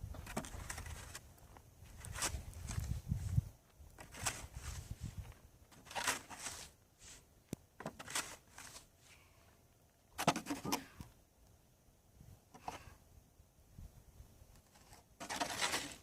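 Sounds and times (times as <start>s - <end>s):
shovel scraping snow: 4.0s - 7.3s, 7.9s - 9.1s, 14.6s - 16.0s.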